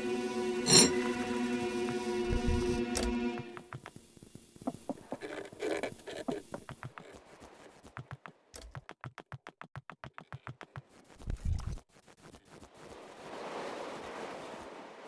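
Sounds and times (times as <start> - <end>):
short synth notes: 0.0 - 3.7.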